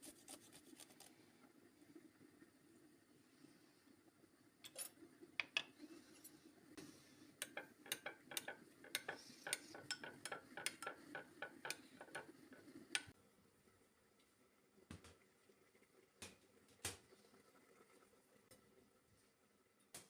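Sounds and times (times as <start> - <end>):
cutlery clicking against dish: 7.4 - 12.3.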